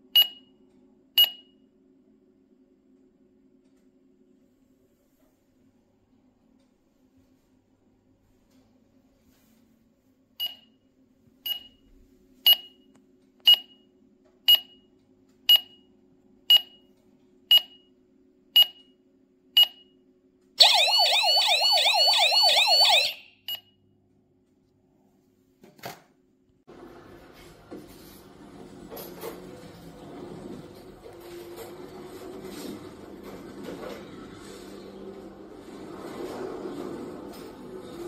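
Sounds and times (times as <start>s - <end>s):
alarm siren warbling wail: 20.6s - 23.3s
alarm system short beeps: 20.6s - 23.7s.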